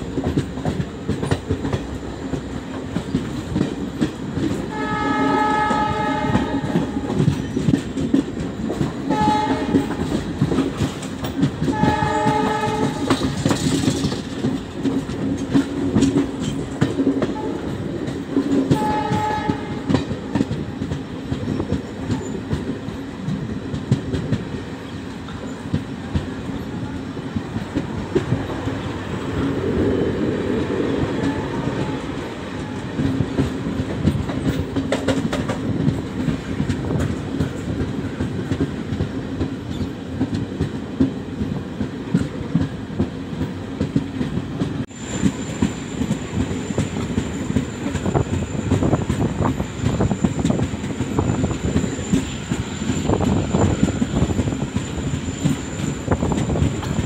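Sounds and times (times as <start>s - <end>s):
train wheels clickety-clack: 0.0s - 57.0s
train horn: 4.7s - 7.3s, 9.0s - 10.2s, 11.6s - 13.3s, 17.2s - 17.8s, 18.7s - 20.5s, 31.1s - 33.1s.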